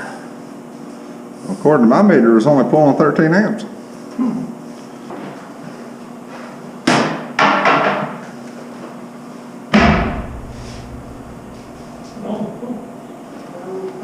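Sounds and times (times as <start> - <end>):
sharp knocks with ringing decay: 9.7 - 12.2
steady hum: 9.7 - 13.4
low rumble: 9.8 - 12.5.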